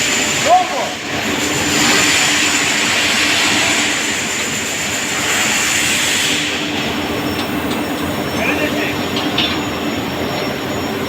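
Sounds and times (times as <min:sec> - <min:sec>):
hydraulic press brake hissing: 0:01.0 - 0:11.0
constant low hum: 0:05.2 - 0:10.9.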